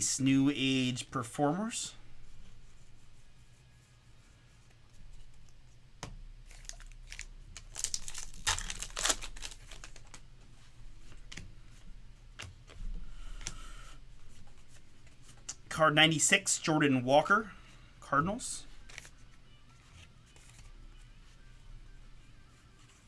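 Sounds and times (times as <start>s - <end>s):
wrapper tearing and crinkling: 6.4s - 10.2s.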